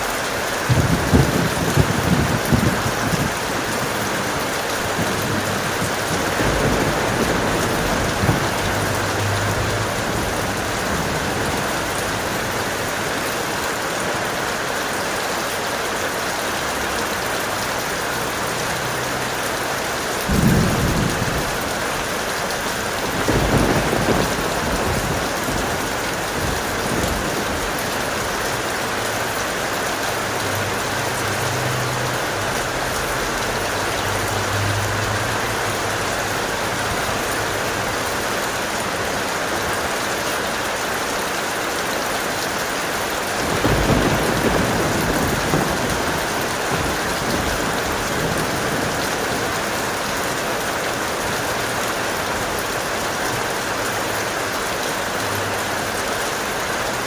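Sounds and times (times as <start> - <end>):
heavy rain: 0.0 - 57.0
thunder rolling: 0.6 - 13.2, 20.2 - 38.0, 43.4 - 50.2.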